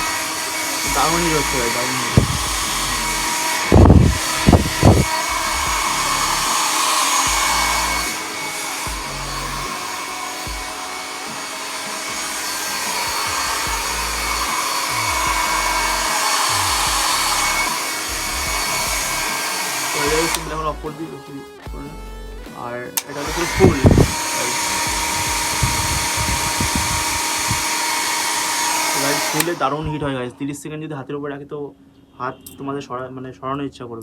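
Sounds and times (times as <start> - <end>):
hair dryer blowing air: 0.0 - 21.8, 22.5 - 30.4
low thumps: 0.9 - 6.5, 24.8 - 27.6.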